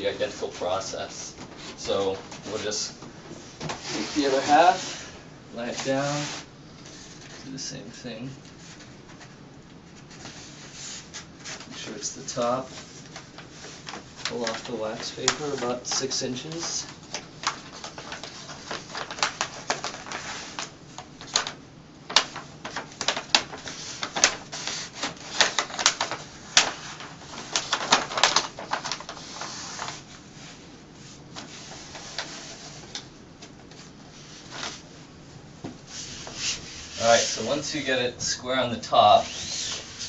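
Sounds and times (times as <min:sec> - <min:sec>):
paper backing peeling crackling: 0:08.5 - 0:30.3, 0:31.0 - 0:35.0, 0:35.9 - 0:40.0.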